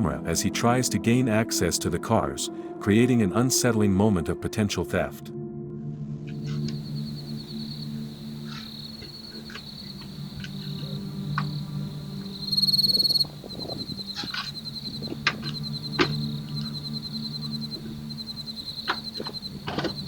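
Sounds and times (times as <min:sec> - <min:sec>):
insects trilling: 0:06.3 - 0:20.0.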